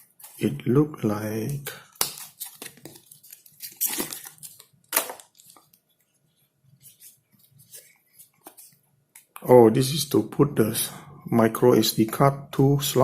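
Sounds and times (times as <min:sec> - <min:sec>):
packaging rustling and crinkling: 0:02.0 - 0:06.0.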